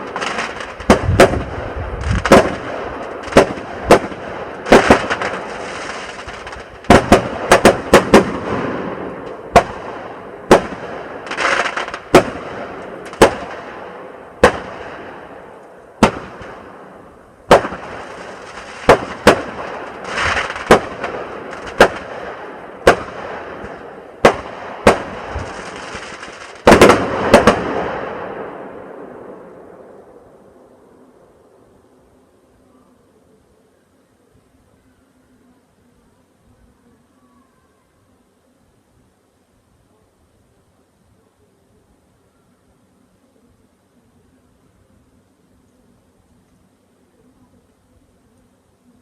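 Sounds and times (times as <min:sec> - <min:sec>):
fireworks trailing hiss: 0:00.0 - 0:29.6
fireworks bangs: 0:00.0 - 0:30.2.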